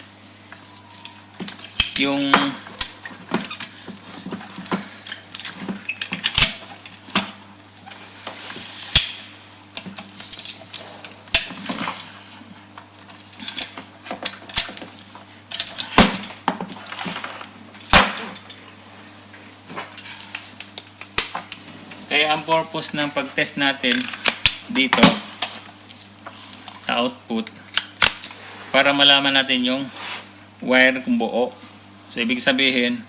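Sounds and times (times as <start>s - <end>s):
steady low hum: 0.0s - 33.0s
small tools clinking: 9.8s - 12.1s.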